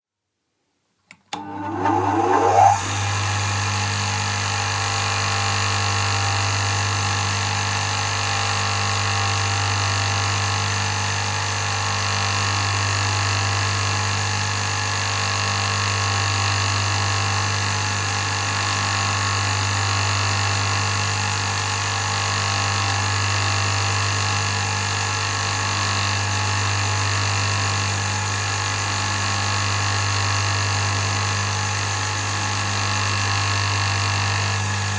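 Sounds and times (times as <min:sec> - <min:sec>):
buffing wheel motor whining: 0:01.3 - 0:03.2.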